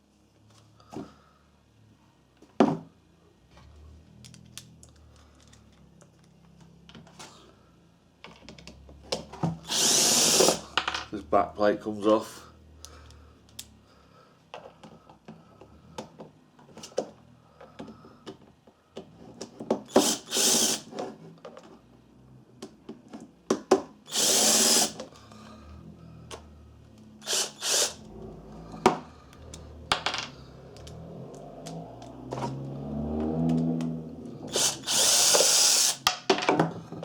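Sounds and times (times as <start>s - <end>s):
power screwdriver running: 9.7s - 10.6s, 19.9s - 20.9s, 24.1s - 25.1s, 27.2s - 28.1s, 34.4s - 36.0s.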